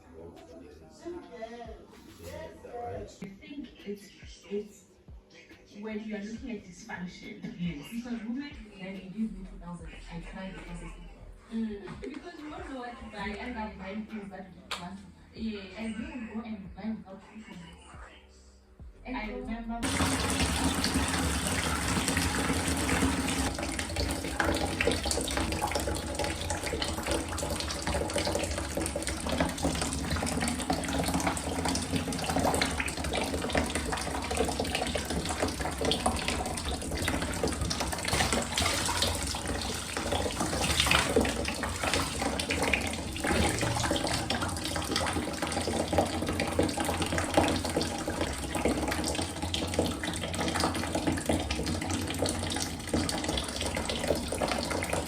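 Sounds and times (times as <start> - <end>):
tap water running: 19.8 - 55.0
water splashing: 19.8 - 55.0.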